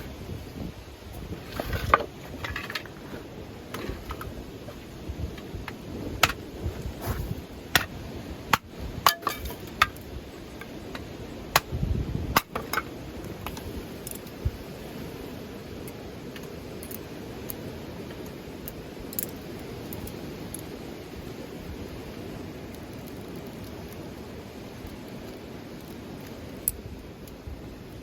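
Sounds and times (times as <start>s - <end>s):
low rush of wind: 0.0s - 28.0s
small hard objects clinking: 1.3s - 7.9s, 8.5s - 11.1s.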